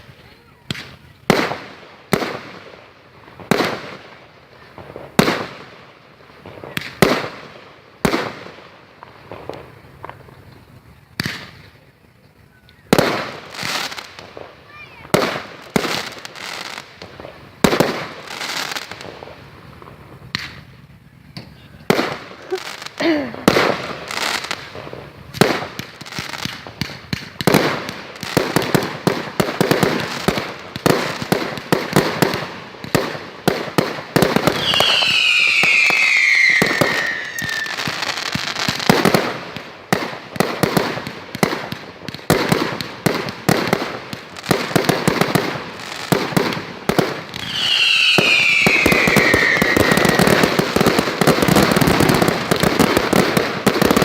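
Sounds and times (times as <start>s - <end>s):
fireworks bangs and crackles: 0.0s - 54.0s
falling firework whistle: 34.2s - 38.9s, 47.3s - 52.3s.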